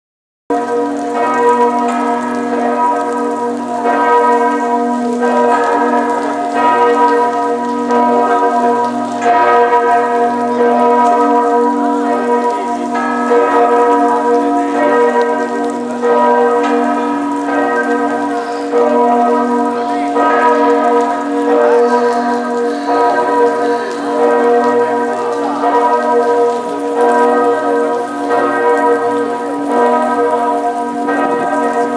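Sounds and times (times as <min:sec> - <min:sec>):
church bells ringing: 0:00.5 - 0:31.9.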